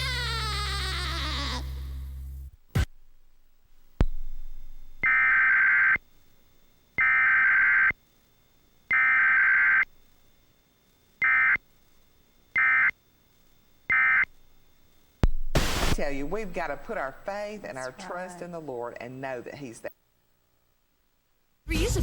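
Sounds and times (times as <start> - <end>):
buzzy digital data bursts: 4.4 - 6.1, 8.9 - 9.9, 12.6 - 13.0, 15.4 - 18.1.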